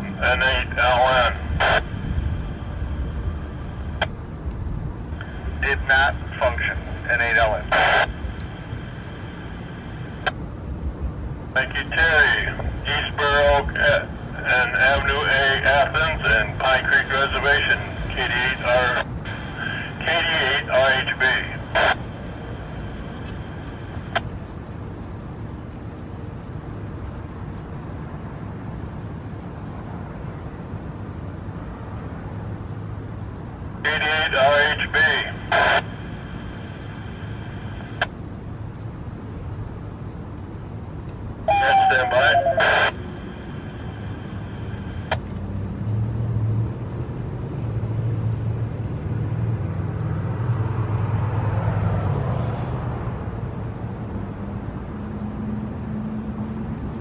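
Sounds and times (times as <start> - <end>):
faint radio tones: 0.0 - 4.4, 5.0 - 10.4, 11.5 - 26.4, 33.8 - 45.3
low outdoor rumble: 0.0 - 57.0
vehicle engine humming: 0.0 - 57.0.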